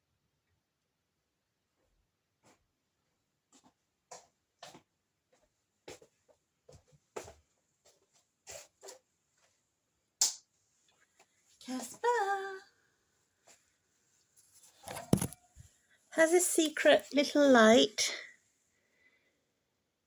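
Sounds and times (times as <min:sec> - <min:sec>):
hamster rustling and scratching: 0:14.1 - 0:15.4.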